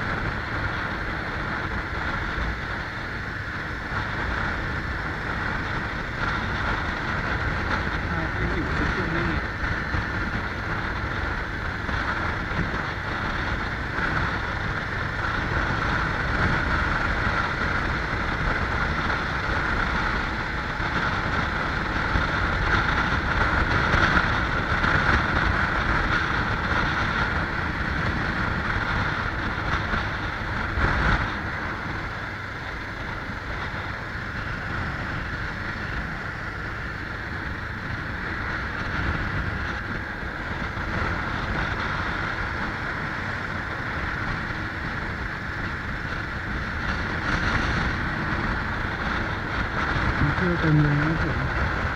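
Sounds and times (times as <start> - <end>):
vehicle engine and road noise: 0.0 - 51.9
wind buffeting microphone: 0.0 - 51.9.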